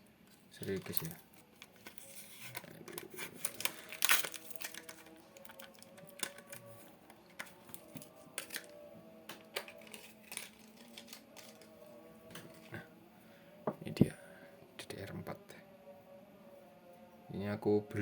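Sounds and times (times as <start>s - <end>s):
plastic packaging crinkling: 0.5s - 12.7s.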